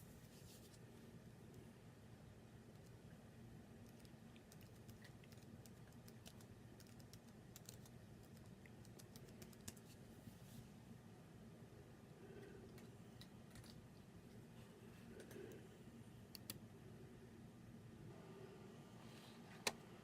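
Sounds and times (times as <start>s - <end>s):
low steady hum: 0.0s - 20.0s
keyboard typing: 3.9s - 9.9s.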